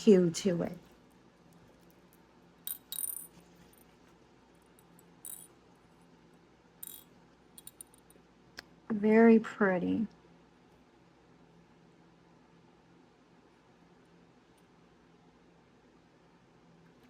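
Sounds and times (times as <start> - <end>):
glass beads clicking in bags: 2.7 - 3.8, 4.8 - 5.5, 6.8 - 8.2.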